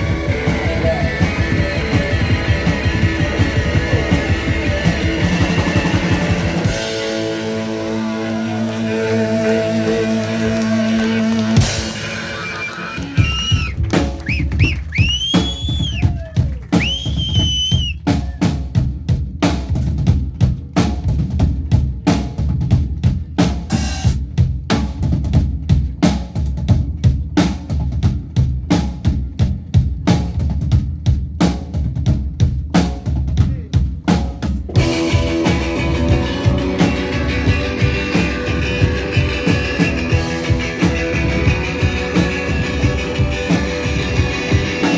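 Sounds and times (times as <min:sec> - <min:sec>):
rock band with guitars: 0:00.0 - 0:18.4, 0:34.6 - 0:44.9
drum kit steady beat: 0:00.0 - 0:44.9.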